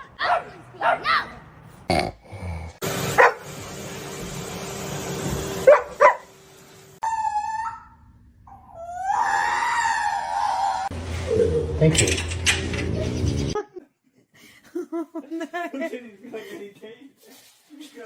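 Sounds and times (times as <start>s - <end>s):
pet wailing: 8.5s - 10.9s.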